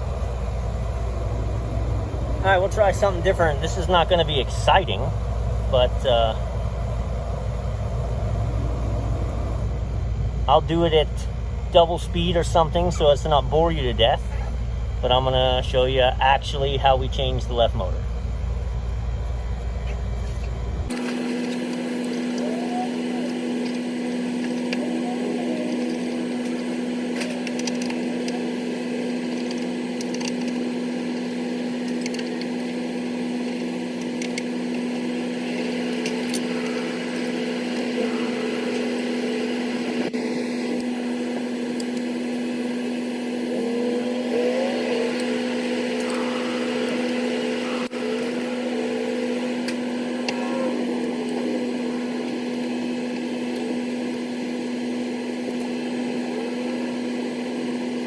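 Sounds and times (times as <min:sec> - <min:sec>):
machinery hum: 0:00.0 - 0:58.0
hand tools clicking and rattling: 0:29.3 - 0:32.6.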